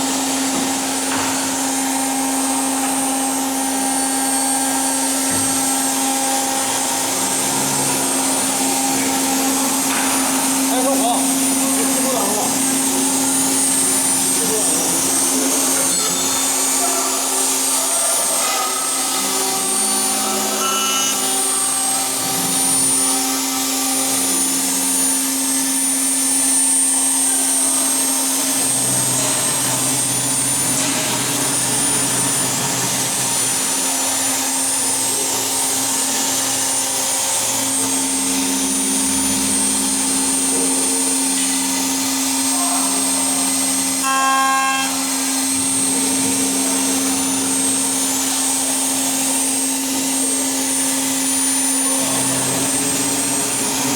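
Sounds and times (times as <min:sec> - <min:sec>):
spindle humming: 0:00.0 - 0:26.8, 0:35.5 - 0:53.9
high whines: 0:41.2 - 0:49.8.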